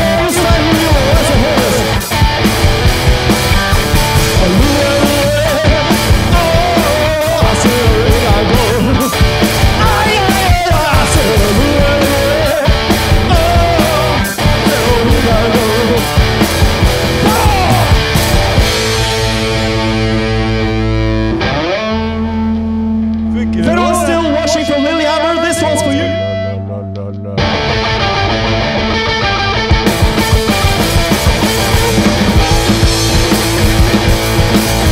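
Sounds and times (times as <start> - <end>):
driving drum beat: 0.0 - 20.6, 28.0 - 34.9
bending melody line: 0.0 - 34.9
distorted electric guitar: 0.0 - 34.9.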